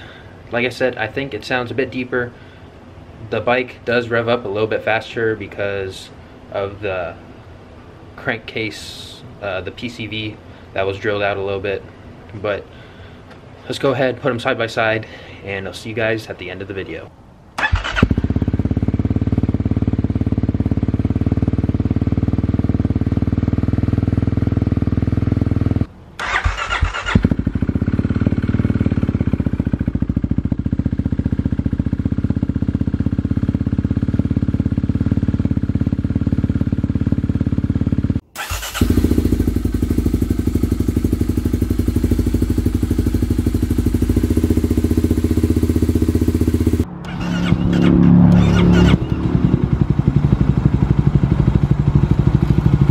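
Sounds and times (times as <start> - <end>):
motorcycle engine running: 17.7 - 25.9, 27.1 - 52.9.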